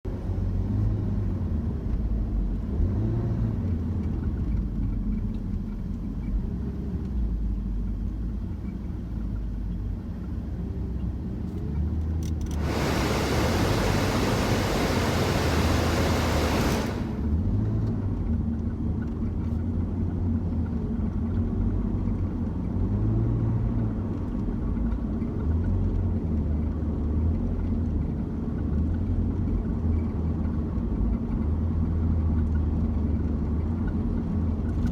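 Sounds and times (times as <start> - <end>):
road and engine rumble: 0.0 - 34.9
loud hiss: 12.6 - 17.3.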